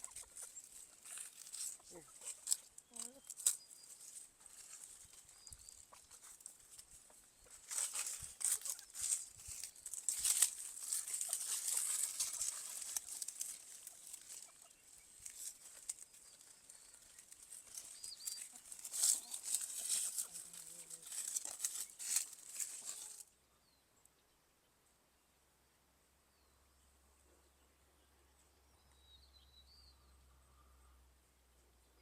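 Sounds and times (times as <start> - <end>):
rustling and crackling: 0.0 - 23.3.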